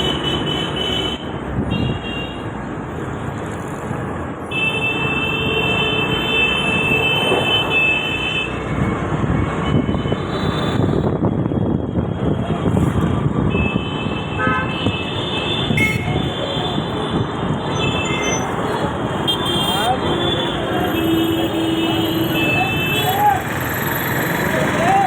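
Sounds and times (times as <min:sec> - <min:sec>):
moving vehicle rumble: 0:01.2 - 0:25.0
horns honking: 0:13.5 - 0:23.5.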